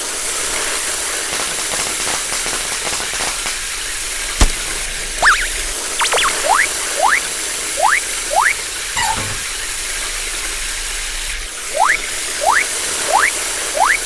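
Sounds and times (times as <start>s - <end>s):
rising squeaky whistles: 5.2s - 9.5s.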